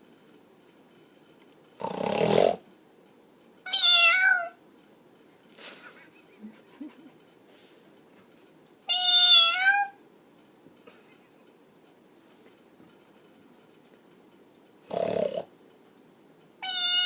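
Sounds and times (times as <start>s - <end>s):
man snoring: 1.8s - 2.6s, 14.9s - 15.5s
cat meowing: 3.7s - 4.6s, 8.9s - 10.0s, 16.6s - 17.0s.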